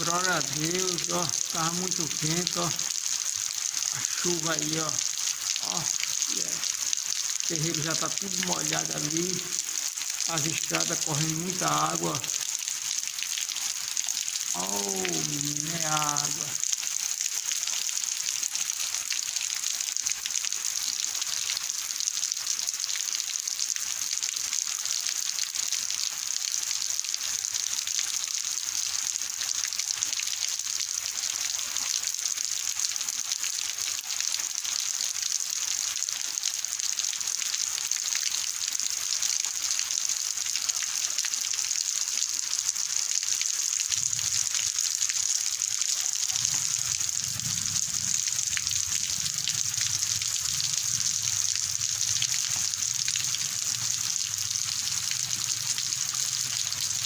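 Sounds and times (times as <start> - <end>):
heavy rain pouring: 0.0 - 17.3, 43.1 - 57.0
water running off: 0.0 - 20.4, 42.9 - 57.0.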